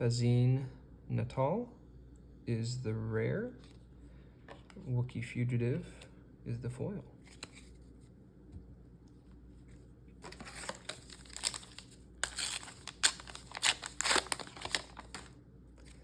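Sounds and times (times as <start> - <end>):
foil wrapper tearing and crinkling: 10.2 - 16.0.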